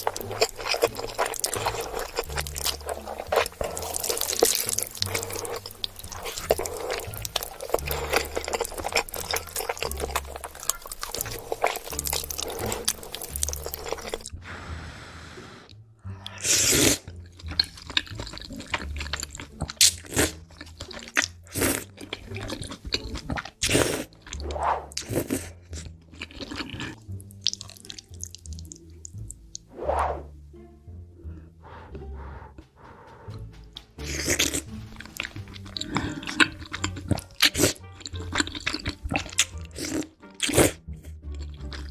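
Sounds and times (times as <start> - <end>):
chewing noodles: 0.0 - 14.4, 16.2 - 29.6, 31.7 - 41.9
background music with bass line: 15.8 - 41.9.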